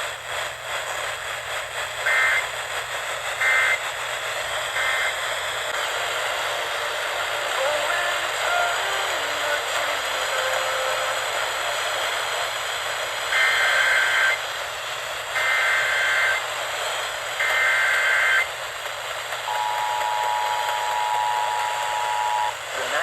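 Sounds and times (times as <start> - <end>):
radio hiss: 0.0 - 23.0
two-tone attention signal: 19.5 - 22.6.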